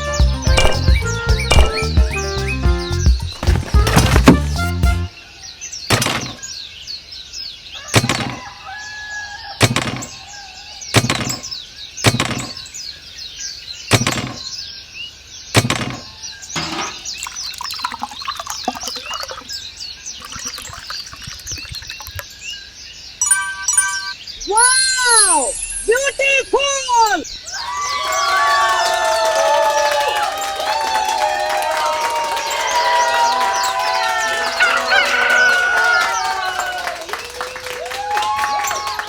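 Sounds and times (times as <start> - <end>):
birds chirping: 0.0 - 9.3, 10.0 - 30.6, 32.2 - 37.4.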